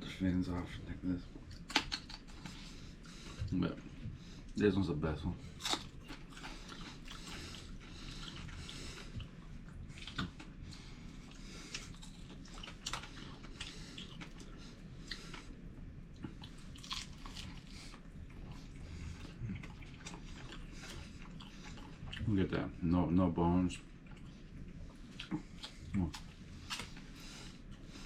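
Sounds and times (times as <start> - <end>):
person chewing crunchy food: 5.5 - 22.3, 23.9 - 28.0.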